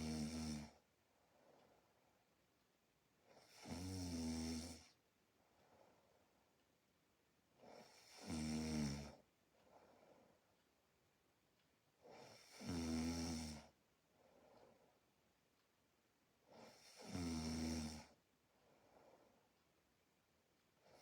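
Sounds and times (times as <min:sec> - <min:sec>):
person snoring: 0:00.0 - 0:00.8, 0:07.8 - 0:09.2, 0:12.1 - 0:13.7, 0:16.6 - 0:18.2
soft breath: 0:01.1 - 0:02.4, 0:05.3 - 0:06.6, 0:09.5 - 0:10.7, 0:14.0 - 0:15.2, 0:18.4 - 0:19.7.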